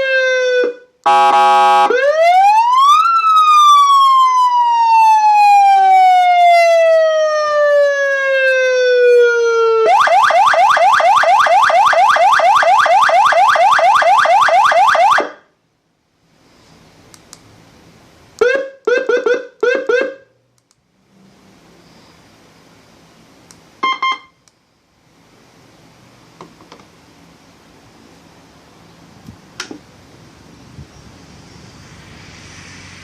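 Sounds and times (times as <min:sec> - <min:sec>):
electronic siren: 0:00.0 - 0:15.4.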